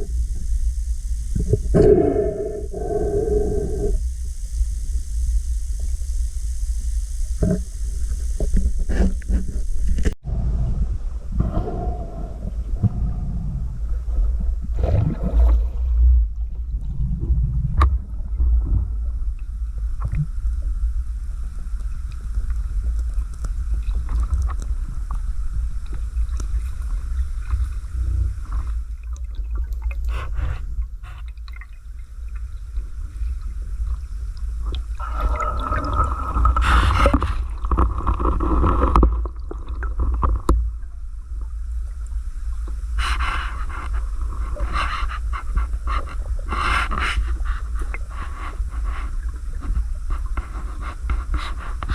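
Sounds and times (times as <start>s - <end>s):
low underwater rumble: 0.0s - 51.9s
water bubbling and gurgling: 10.2s - 42.9s.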